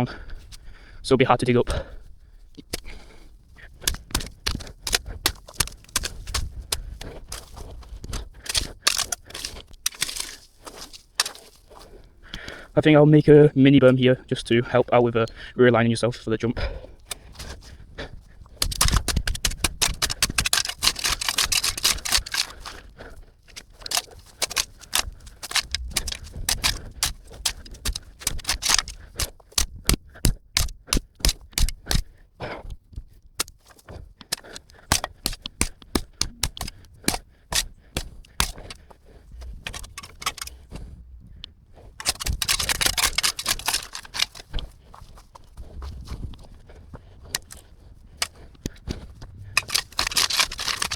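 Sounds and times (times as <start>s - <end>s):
shovel scraping dirt: 2.7s - 12.0s, 18.6s - 32.2s, 33.4s - 50.9s
shovel chopping into dirt: 3.8s - 11.9s, 18.6s - 32.2s, 33.4s - 40.7s, 42.0s - 46.3s, 47.2s - 50.9s.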